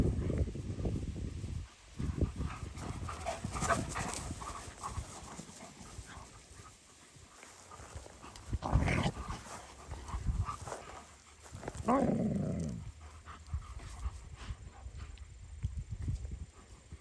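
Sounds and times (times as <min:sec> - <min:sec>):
dog panting: 0:12.6 - 0:15.2.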